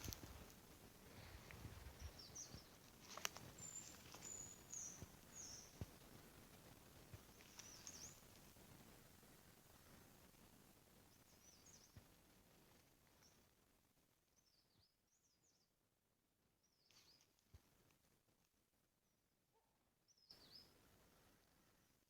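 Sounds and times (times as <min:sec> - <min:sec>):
faint high-pitched bird calls: 0:01.9 - 0:05.9, 0:07.3 - 0:08.3, 0:16.6 - 0:17.4, 0:19.1 - 0:21.9.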